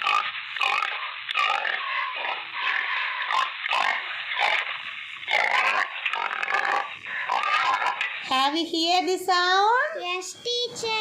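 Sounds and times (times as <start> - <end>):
pig oinking and grunting: 0.0 - 4.7, 5.3 - 8.1.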